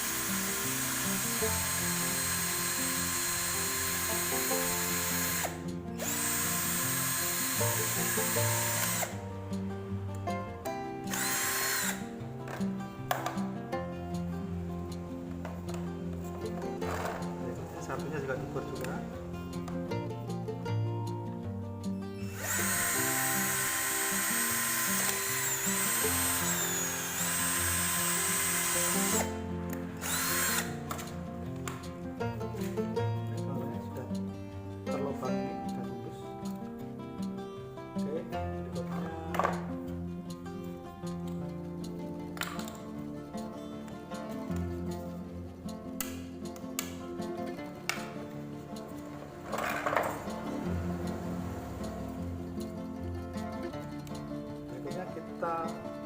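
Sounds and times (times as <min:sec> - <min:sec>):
electric drill boring plastic pipe: 0:00.0 - 0:09.2, 0:11.0 - 0:13.4, 0:16.5 - 0:17.3, 0:22.2 - 0:31.8, 0:39.3 - 0:39.7, 0:49.4 - 0:52.1
light guitar music: 0:00.0 - 0:56.0.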